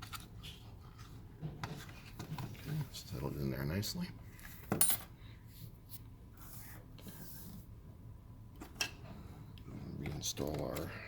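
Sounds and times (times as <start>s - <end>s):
handling and rustling of parts: 0.0s - 3.1s, 4.3s - 5.2s.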